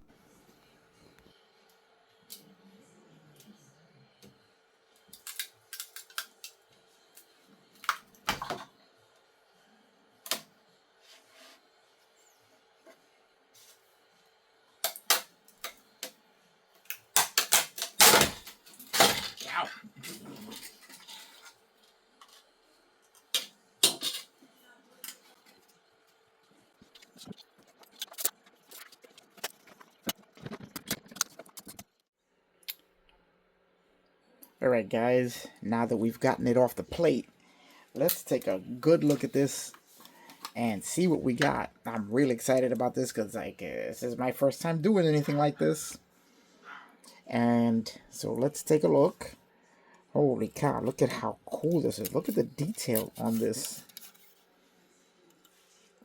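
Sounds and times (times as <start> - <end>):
metal tools clinking and scraping: 23.8 - 24.3.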